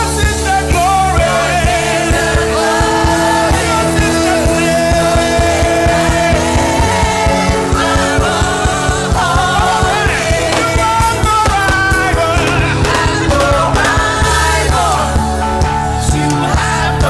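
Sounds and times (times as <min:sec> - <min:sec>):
drums and bass: 0:00.0 - 0:17.0
keyboard chords: 0:00.0 - 0:17.0
person singing: 0:00.0 - 0:17.0.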